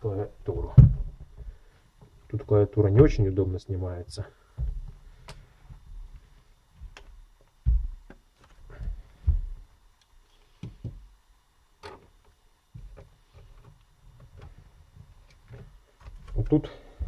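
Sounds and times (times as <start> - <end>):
dull thumps: 0.2 - 2.2, 2.8 - 3.4, 4.1 - 5.1, 6.8 - 9.7.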